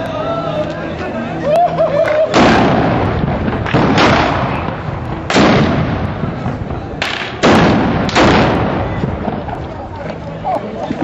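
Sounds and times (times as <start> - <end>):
smaller gunshot crack: 2.3 - 3.0, 3.6 - 6.1, 7.0 - 8.8
rifle blasts: 2.3 - 6.4, 7.0 - 9.0.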